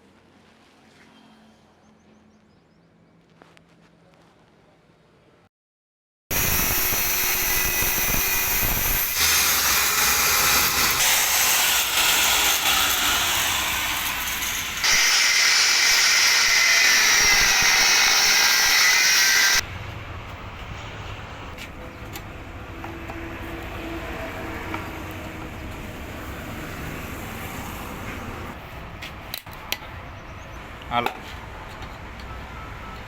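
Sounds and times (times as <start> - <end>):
power tool whining on metal: 6.3 - 19.6.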